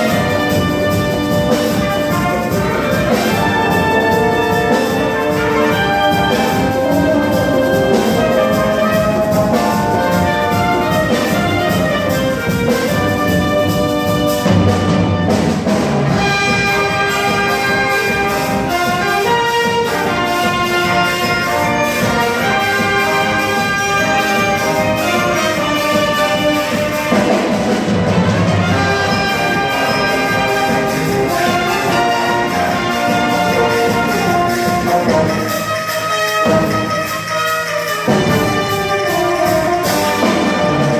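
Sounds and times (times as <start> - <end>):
percussion steady beat: 0.0 - 40.9
trumpets and trombones: 0.0 - 40.9
wind band playing: 0.0 - 40.9.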